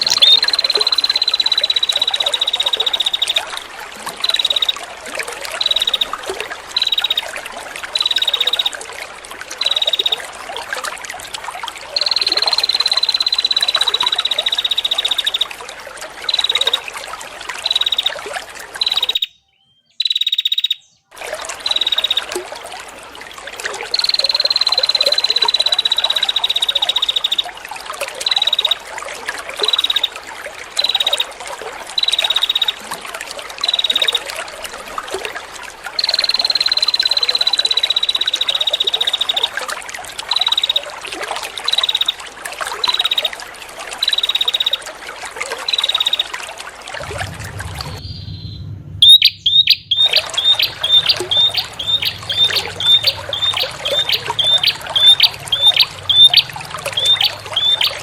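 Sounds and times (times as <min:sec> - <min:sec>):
songbird trills and chirps: 0:00.0 - 0:08.9, 0:09.5 - 0:10.3, 0:11.9 - 0:15.5, 0:16.2 - 0:16.9, 0:17.6 - 0:18.2, 0:18.8 - 0:22.4, 0:23.9 - 0:27.5, 0:28.2 - 0:28.8, 0:29.6 - 0:30.2, 0:30.8 - 0:31.4, 0:32.0 - 0:32.8, 0:33.6 - 0:34.3, 0:36.0 - 0:39.5, 0:40.2 - 0:40.9, 0:41.6 - 0:42.2, 0:42.8 - 0:43.4, 0:44.0 - 0:44.9, 0:45.6 - 0:46.4, 0:48.0 - 0:58.0
trickling water: 0:00.0 - 0:58.0
low hum: 0:46.9 - 0:57.5.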